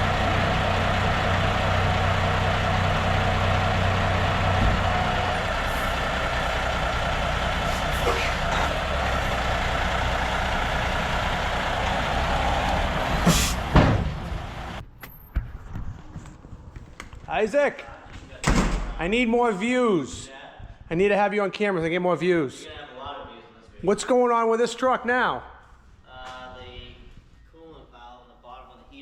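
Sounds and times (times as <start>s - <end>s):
diesel truck engine idling: 0.0s - 14.9s.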